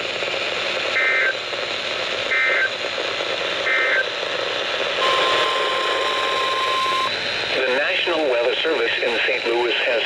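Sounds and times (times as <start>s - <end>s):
radio hiss: 0.1s - 10.0s
screeching data bursts: 5.0s - 7.1s
steady alarm tone: 5.0s - 7.1s.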